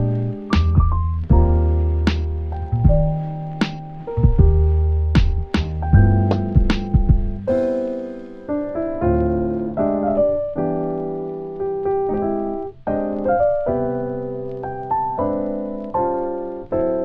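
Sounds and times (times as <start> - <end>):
piano chords: 0.0 - 17.0.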